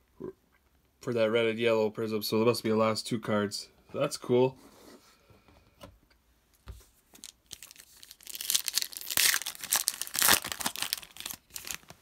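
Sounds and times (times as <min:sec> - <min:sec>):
wrapper tearing and crinkling: 0:07.2 - 0:12.0.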